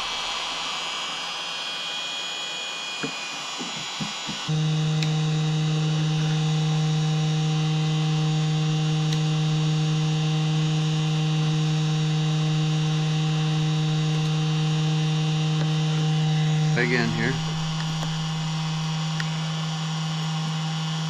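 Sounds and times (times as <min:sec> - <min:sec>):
heat gun humming and hissing: 0:00.0 - 0:21.0.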